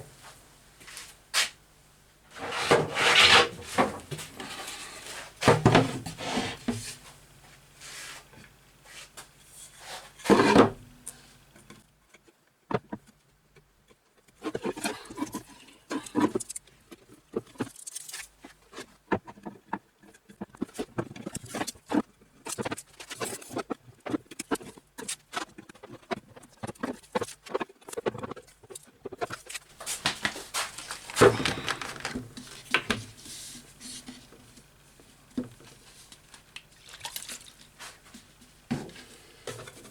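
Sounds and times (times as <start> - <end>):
scraping and rubbing on wood: 2.3 - 7.0.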